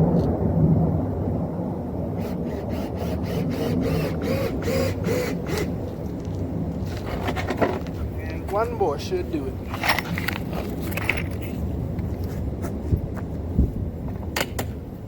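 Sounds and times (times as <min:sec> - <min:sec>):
low rumble: 0:00.0 - 0:04.8, 0:05.7 - 0:08.5
screws being driven squeaking: 0:02.2 - 0:05.7.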